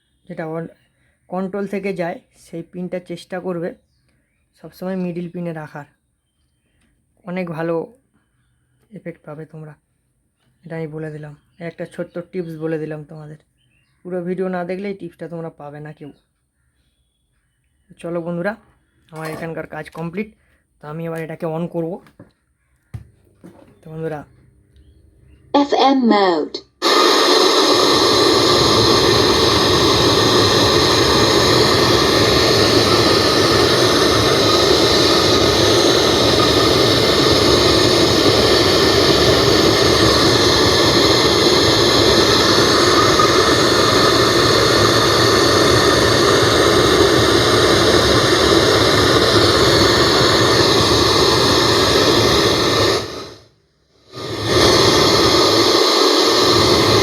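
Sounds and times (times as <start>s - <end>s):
radio static hiss: 25.6s - 53.4s, 54.1s - 57.0s.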